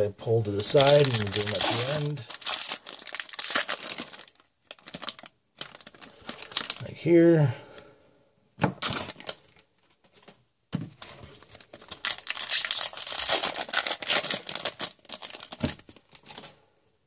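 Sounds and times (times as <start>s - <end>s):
wrapper tearing and crinkling: 0.6s - 6.9s, 8.8s - 9.6s, 11.0s - 16.5s.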